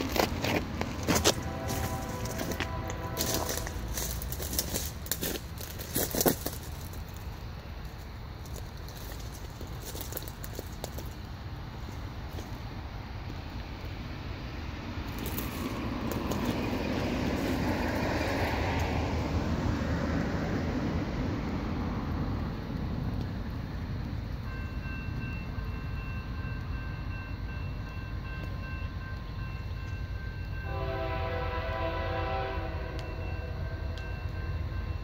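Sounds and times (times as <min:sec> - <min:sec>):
freight train rumbling past: 0:00.0 - 0:35.0
thin high ringing tone: 0:01.1 - 0:05.4, 0:24.4 - 0:31.2, 0:32.6 - 0:35.0.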